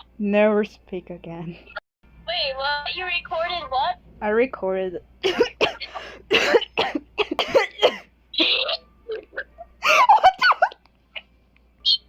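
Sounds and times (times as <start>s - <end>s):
girl coughing hard: 5.2s - 8.9s.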